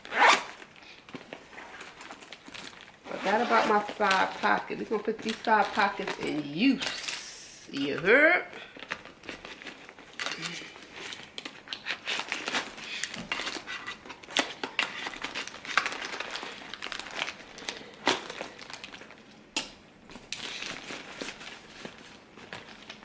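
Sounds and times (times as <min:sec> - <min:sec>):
plastic and fabric rustling: 0:00.0 - 0:23.0
items clicking set down: 0:03.7 - 0:08.1.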